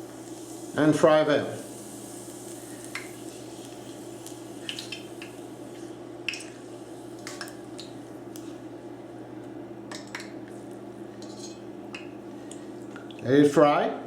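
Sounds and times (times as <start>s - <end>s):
steady low hum: 0.0s - 14.0s
oil crackling and popping: 2.0s - 8.5s.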